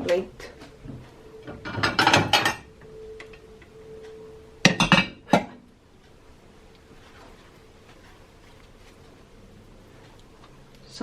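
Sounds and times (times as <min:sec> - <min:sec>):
crockery clattering and clinking: 0:00.8 - 0:02.7
plate knock: 0:00.8 - 0:02.7, 0:04.6 - 0:05.6.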